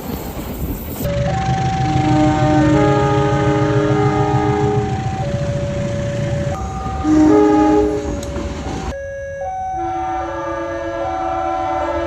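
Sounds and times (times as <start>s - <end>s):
train rumbling: 0.0s - 12.0s
train air horn: 1.1s - 5.4s, 6.8s - 8.3s, 9.8s - 12.0s.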